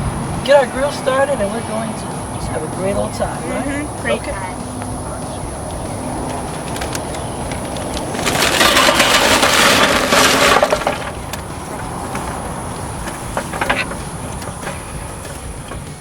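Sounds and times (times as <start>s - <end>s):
charcoal poured into a grill: 7.9s - 11.2s.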